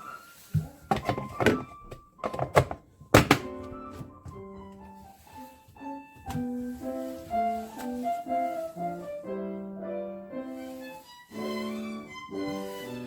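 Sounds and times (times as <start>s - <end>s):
classical piano melody: 2.8s - 13.0s.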